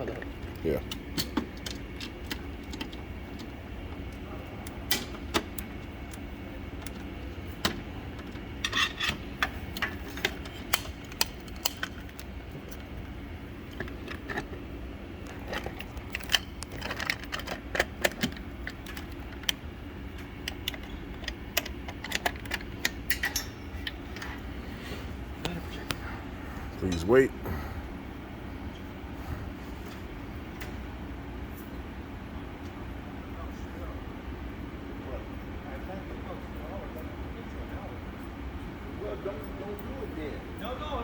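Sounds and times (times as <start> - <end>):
steady low hum: 0.0 - 41.0
metallic clicks and rattles: 6.8 - 12.9, 15.2 - 24.4.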